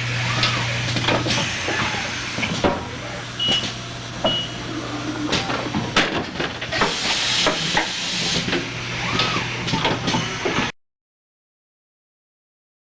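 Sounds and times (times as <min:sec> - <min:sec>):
steady low machine hum: 0:00.0 - 0:06.8
pneumatic tooling hissing and clunking: 0:00.4 - 0:02.9, 0:05.3 - 0:10.7
short high beeps: 0:04.3 - 0:04.6.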